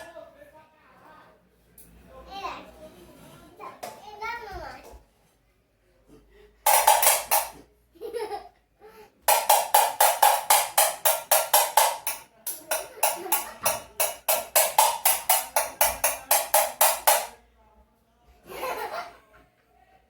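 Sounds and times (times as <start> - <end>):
spoons clacking in rhythm: 6.7 - 7.6, 9.3 - 17.4.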